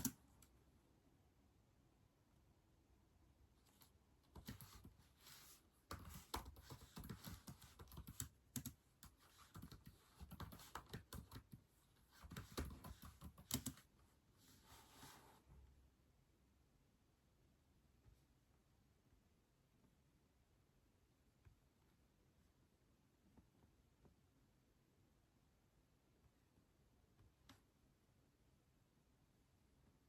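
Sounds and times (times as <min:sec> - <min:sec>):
keyboard typing clicks: 0:05.9 - 0:11.6, 0:12.2 - 0:13.9.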